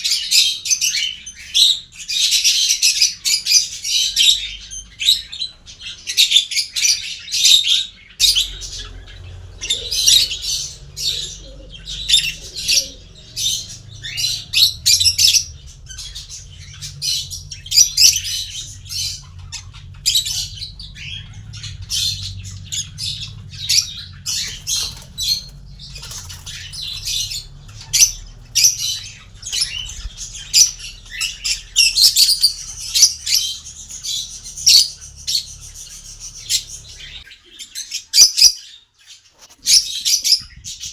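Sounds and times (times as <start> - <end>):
parrots chirping and squawking: 0.0 - 40.9
steady low hum: 8.2 - 37.3.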